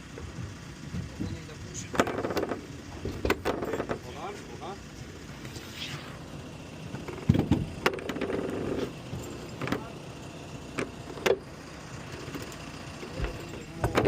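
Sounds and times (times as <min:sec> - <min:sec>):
steady machine whine: 0:00.0 - 0:14.0
sharp knocks and clunks of framing: 0:00.1 - 0:04.1, 0:07.0 - 0:08.8, 0:12.3 - 0:14.0.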